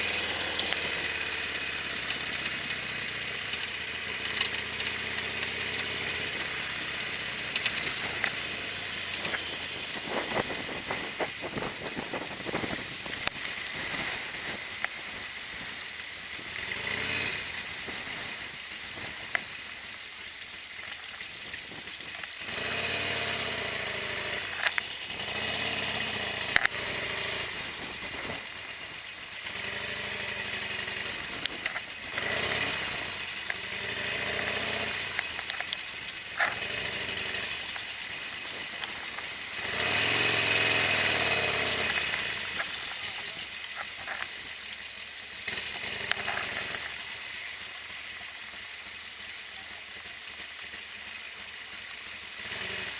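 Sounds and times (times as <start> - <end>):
motorcycle engine revving: 0.0 - 52.9
sharp clicks: 7.5 - 8.4
wind noise: 9.3 - 14.8.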